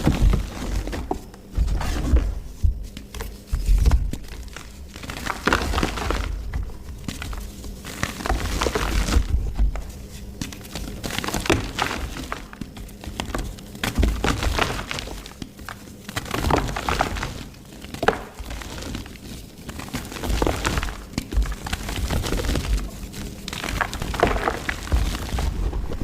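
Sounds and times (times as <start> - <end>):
mud crushing and crackling: 0.0 - 26.0.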